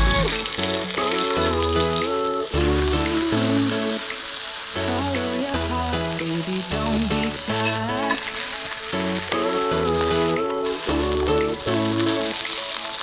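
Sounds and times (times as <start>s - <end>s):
background music with bass line: 0.0s - 4.0s
food sizzling in a pan: 0.0s - 13.0s.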